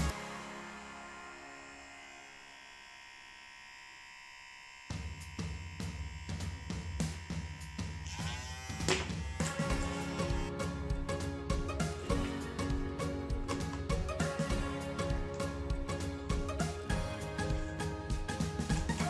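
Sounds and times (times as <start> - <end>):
background music with a beat: 0.0 - 0.6, 8.7 - 19.0
electric hair trimmer buzzing: 0.0 - 10.6.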